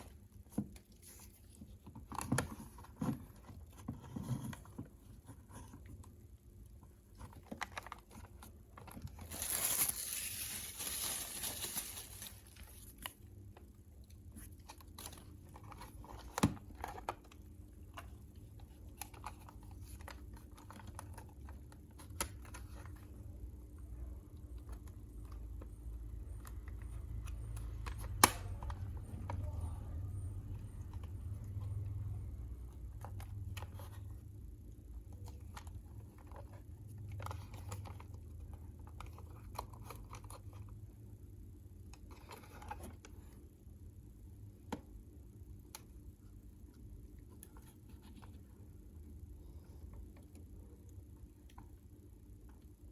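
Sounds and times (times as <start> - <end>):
packaging crinkling and tearing: 7.3 - 13.2.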